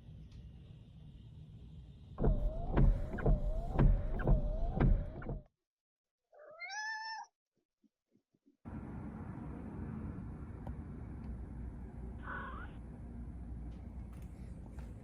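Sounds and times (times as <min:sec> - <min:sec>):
whirring with whine and clicks: 0:00.0 - 0:05.4, 0:10.4 - 0:12.1
cat meowing: 0:06.4 - 0:07.3, 0:12.2 - 0:12.8.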